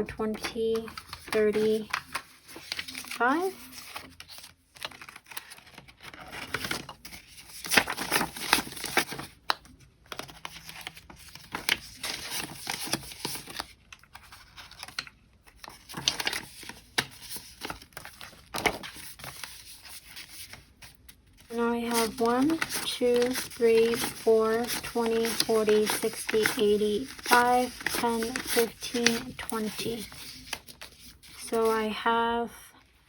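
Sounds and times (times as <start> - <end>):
paper bills rustling: 0.4 - 32.0.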